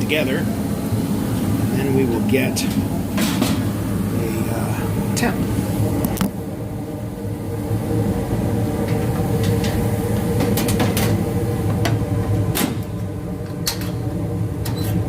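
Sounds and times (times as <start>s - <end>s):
furnace humming: 0.0s - 15.0s.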